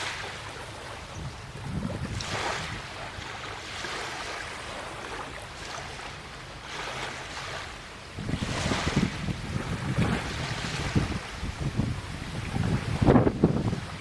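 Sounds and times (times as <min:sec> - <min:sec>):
small waves washing ashore: 0:00.0 - 0:14.0
wind rumbling on microphone: 0:00.6 - 0:03.6, 0:08.1 - 0:14.0.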